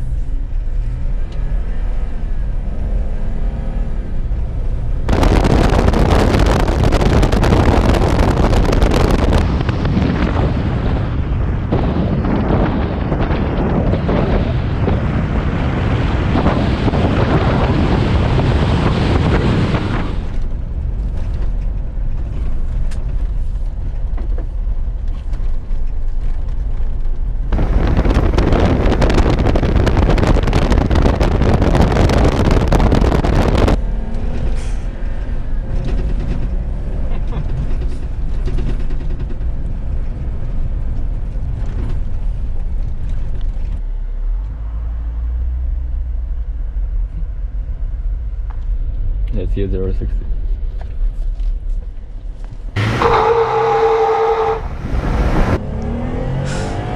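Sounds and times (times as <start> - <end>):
wind noise: 0.0 - 43.8, 46.0 - 56.9
engine and drivetrain rumble: 0.0 - 56.9
loud rushing noise: 5.0 - 20.4, 27.5 - 33.8, 52.8 - 56.9.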